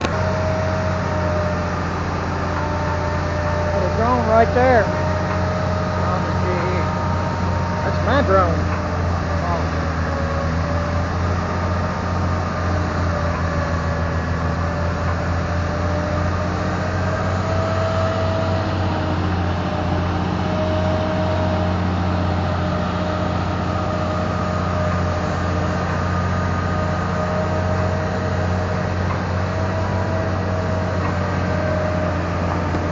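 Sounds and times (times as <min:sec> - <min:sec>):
diesel engine humming: 0:00.0 - 0:32.9
high wavering whine: 0:00.0 - 0:32.9.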